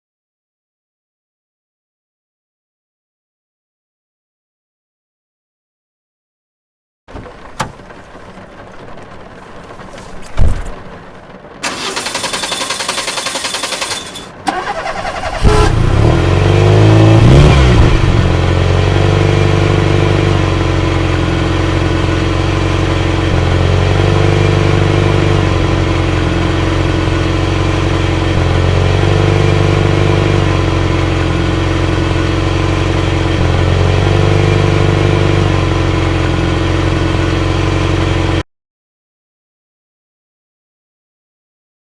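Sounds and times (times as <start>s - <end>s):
rain hissing: 7.1s - 15.4s
car engine idling: 7.1s - 38.4s
car engine starter cranking: 11.6s - 16.0s.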